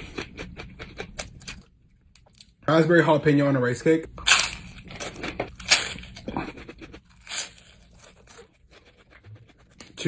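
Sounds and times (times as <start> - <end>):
chewing: 4.8 - 10.0.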